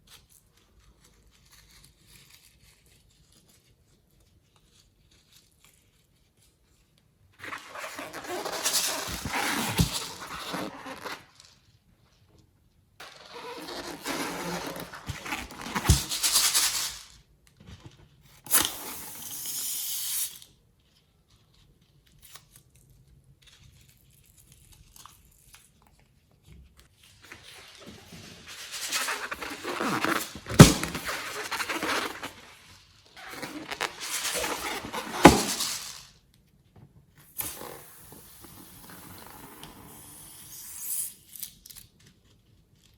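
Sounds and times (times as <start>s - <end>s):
loud sharp snap: 30.5s - 31.6s.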